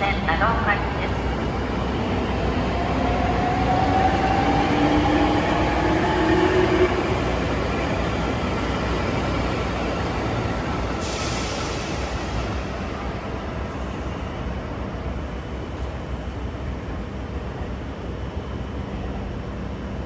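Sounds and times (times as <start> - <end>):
train rumble: 0.0 - 20.0.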